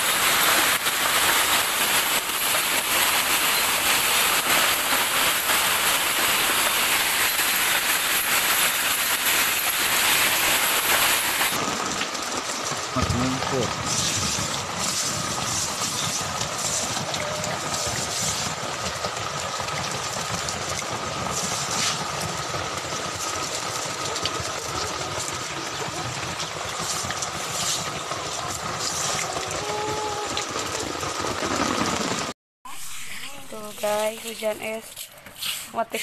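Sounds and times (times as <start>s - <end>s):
heavy hail and rain pouring: 0.0s - 32.4s.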